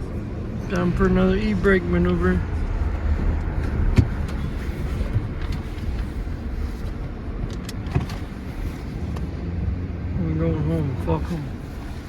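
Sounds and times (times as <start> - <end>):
car engine and tyre rumble: 0.0 - 12.0.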